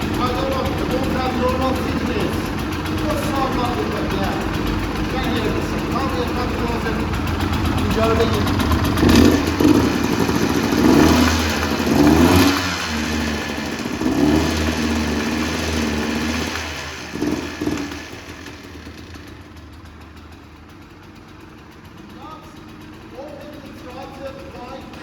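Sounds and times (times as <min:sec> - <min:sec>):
two-stroke engine revving: 0:00.0 - 0:25.0.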